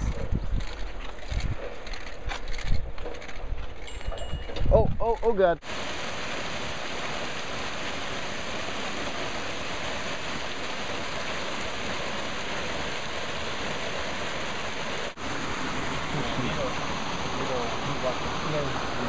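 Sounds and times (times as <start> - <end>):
waterfall rushing: 5.6 - 19.0.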